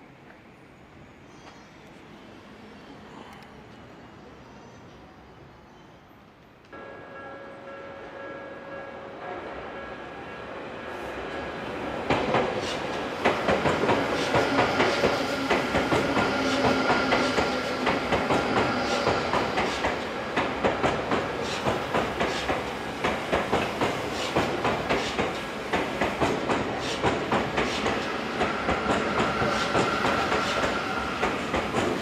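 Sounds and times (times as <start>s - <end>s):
train wheels clacking on rail joints: 12.1s - 32.0s.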